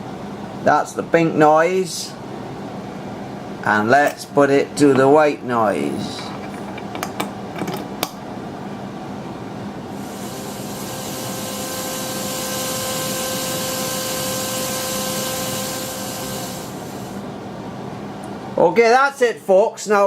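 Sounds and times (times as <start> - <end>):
harsh synthesizer hiss: 10.0 - 17.3.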